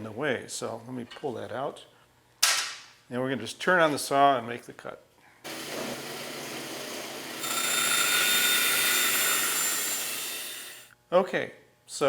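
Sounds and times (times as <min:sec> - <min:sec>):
bandsaw motor hum: 0:05.5 - 0:10.9
saw blade cutting wood whine: 0:05.5 - 0:10.9.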